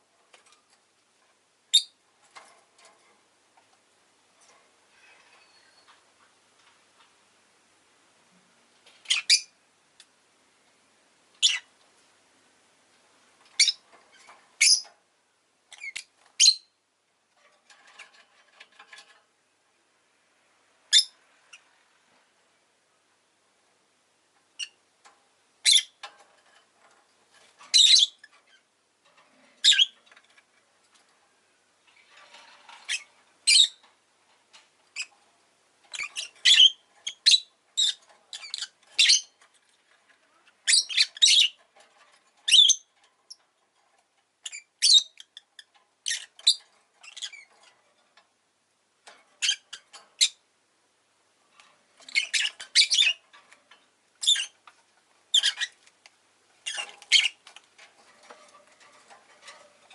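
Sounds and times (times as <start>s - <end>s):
lovebird chirping: 1.7s - 2.0s, 9.1s - 9.5s, 11.4s - 11.7s, 13.6s - 13.8s, 14.6s - 14.8s, 15.7s - 16.8s, 20.9s - 21.6s, 25.6s - 26.0s, 27.7s - 28.6s, 29.6s - 30.0s, 32.9s - 33.8s, 35.9s - 39.4s, 40.6s - 41.6s, 42.5s - 42.9s, 44.4s - 45.4s, 52.0s - 53.2s, 54.2s - 54.6s, 55.3s - 55.7s, 56.6s - 57.4s.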